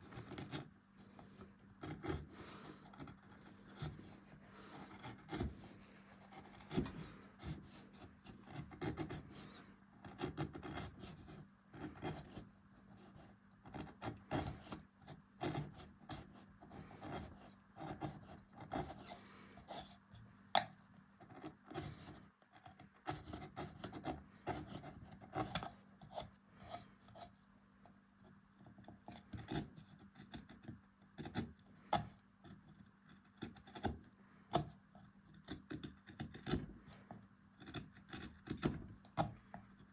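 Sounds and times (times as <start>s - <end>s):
carving tools scraping wood: 0.0s - 12.5s, 13.2s - 20.0s, 28.6s - 39.9s.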